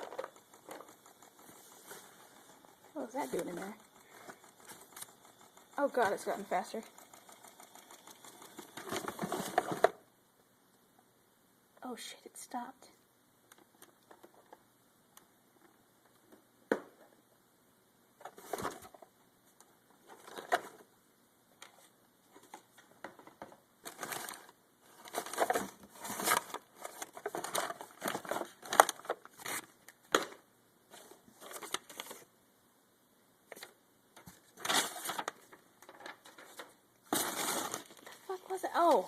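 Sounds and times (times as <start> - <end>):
crinkling and rustling of items: 0.0 - 10.1, 13.5 - 14.7, 18.2 - 32.4, 33.5 - 39.0.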